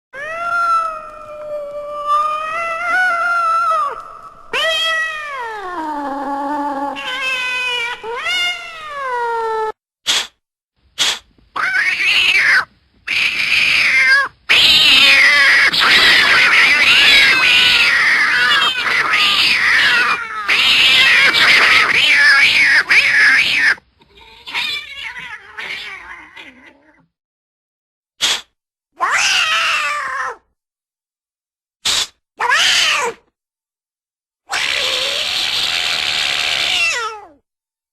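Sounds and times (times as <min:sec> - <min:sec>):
cartoon cat meowing: 0:00.2 - 0:09.8, 0:11.6 - 0:27.0, 0:29.0 - 0:30.4, 0:34.5 - 0:37.4.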